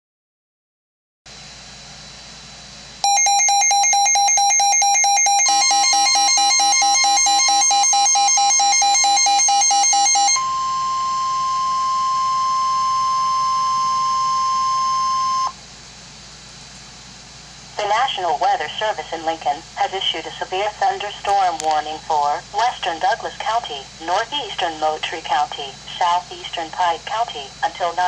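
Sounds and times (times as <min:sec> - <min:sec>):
rapid pulsing alarm beeps: 0:03.0 - 0:15.6
steady warning alarm tone: 0:03.0 - 0:15.6.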